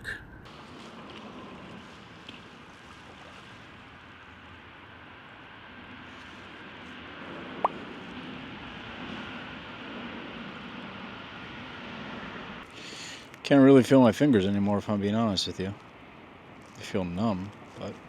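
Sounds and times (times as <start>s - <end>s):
faint outdoor hiss: 11.0s - 18.0s.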